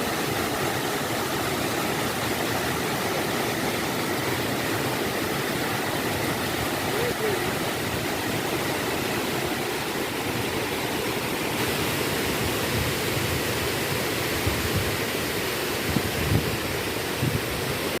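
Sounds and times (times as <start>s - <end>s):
water rushing over waterfall: 0.0s - 18.0s.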